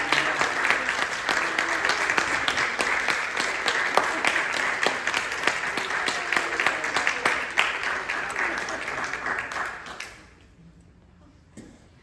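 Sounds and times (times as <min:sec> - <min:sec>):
voices in crowd: 0:00.0 - 0:09.6
audience applauding: 0:00.0 - 0:10.3.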